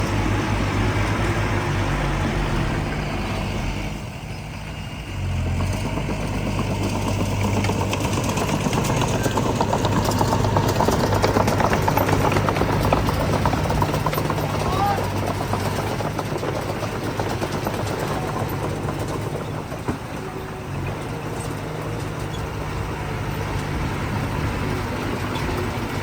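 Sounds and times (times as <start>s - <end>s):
diesel engine running: 0.0s - 26.0s
rapid metallic clatter: 5.6s - 26.0s.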